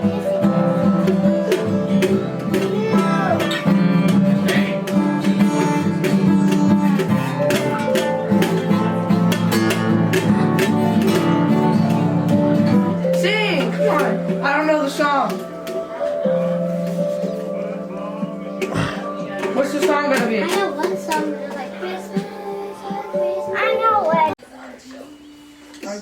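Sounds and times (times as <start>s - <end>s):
acoustic guitar strumming: 0.0s - 24.4s.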